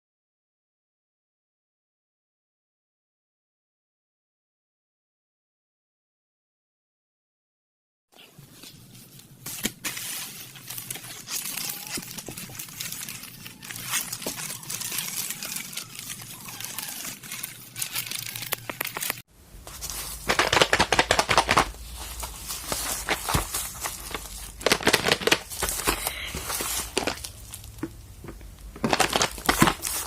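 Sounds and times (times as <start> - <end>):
plastic packaging crinkling: 8.3 - 30.0.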